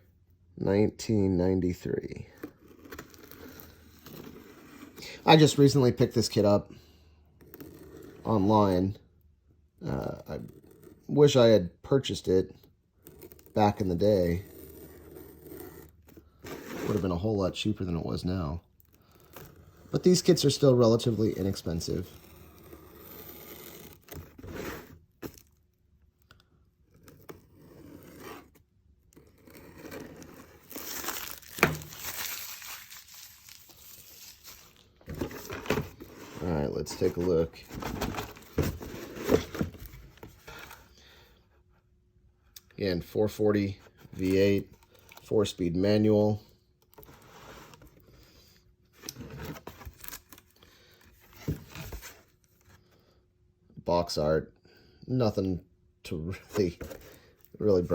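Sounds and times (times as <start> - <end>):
cardboard box and plastic rustling: 29.2 - 40.9, 48.9 - 52.9, 56.3 - 57.9
plastic wrapping crinkling and tearing: 30.1 - 35.5.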